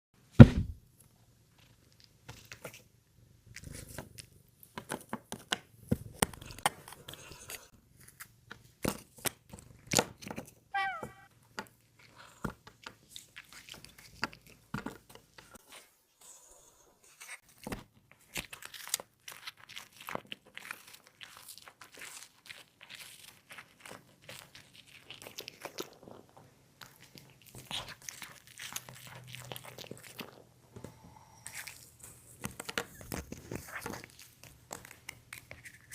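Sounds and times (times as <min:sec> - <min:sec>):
thump: 0:00.4 - 0:00.8
brief high animal call: 0:10.8 - 0:11.3
pet crunching a treat: 0:18.4 - 0:30.5, 0:31.5 - 0:35.9.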